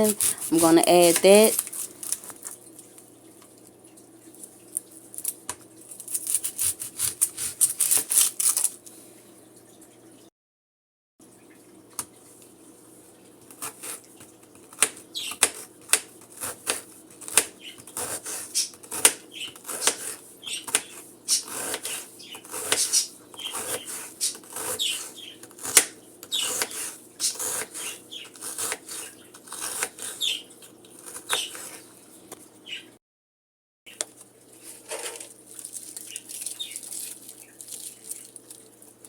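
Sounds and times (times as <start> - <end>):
knife chopping onion on board: 0.0 - 1.6, 6.3 - 8.3, 14.6 - 30.4, 31.0 - 31.8.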